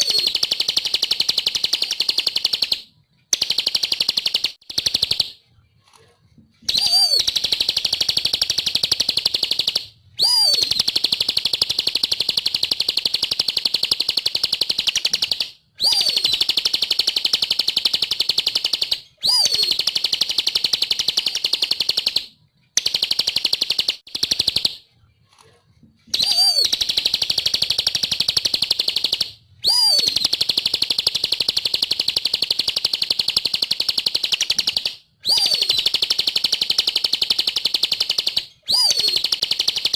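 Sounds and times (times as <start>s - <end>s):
bird trilling: 0.0s - 2.7s, 6.7s - 13.2s, 14.7s - 20.4s, 26.1s - 39.4s.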